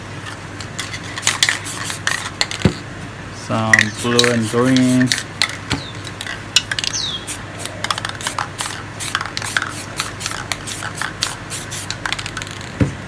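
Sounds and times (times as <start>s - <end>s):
spray paint can bursts: 1.1s - 2.6s, 3.7s - 5.3s, 7.2s - 12.7s.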